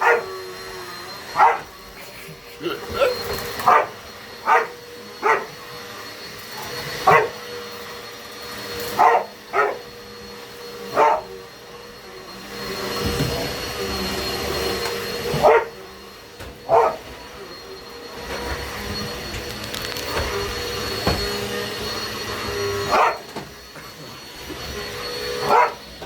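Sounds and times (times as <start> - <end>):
dog barking: 0.0 - 0.3, 1.4 - 1.7, 3.6 - 5.6, 7.0 - 7.4, 9.0 - 9.9, 10.9 - 11.3, 15.4 - 15.8, 16.7 - 17.0, 22.9 - 23.3, 25.4 - 25.8
vacuum cleaner hum: 0.0 - 26.0.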